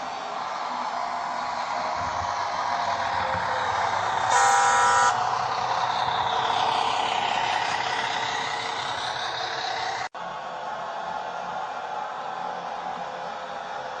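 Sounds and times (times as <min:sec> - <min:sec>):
diesel engine sound through small speaker: 0:00.0 - 0:10.1
short horn blast: 0:04.3 - 0:05.3.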